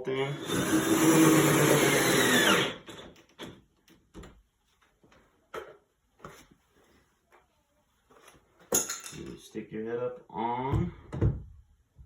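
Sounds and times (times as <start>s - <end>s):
power drill spinning down: 0.3s - 3.0s.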